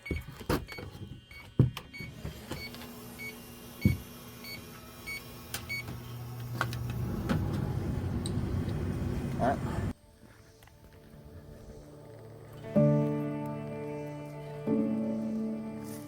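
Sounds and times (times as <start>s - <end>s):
air conditioner motor hum: 1.9s - 9.9s
air conditioner clicks: 5.5s - 8.8s.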